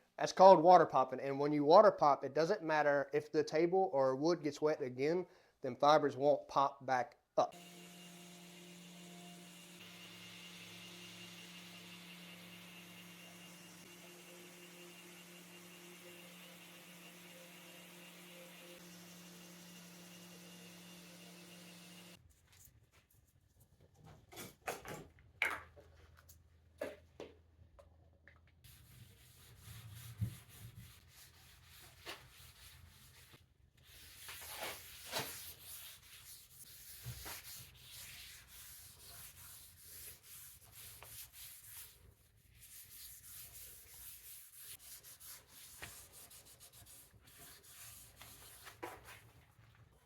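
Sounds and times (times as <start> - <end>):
sandpaper rubbing on wood: 28.7 - 49.0.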